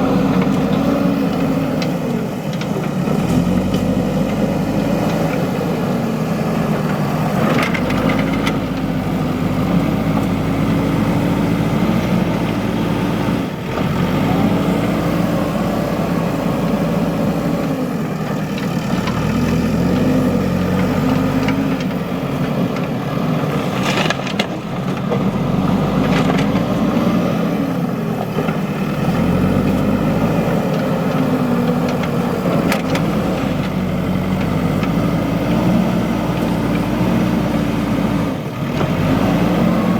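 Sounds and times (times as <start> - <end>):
diesel engine working under load: 0.0 - 39.9.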